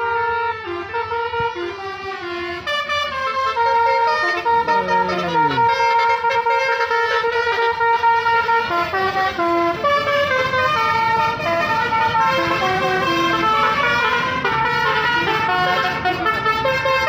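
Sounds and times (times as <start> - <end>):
multi-tone bus horn tune: 0.0 - 17.0.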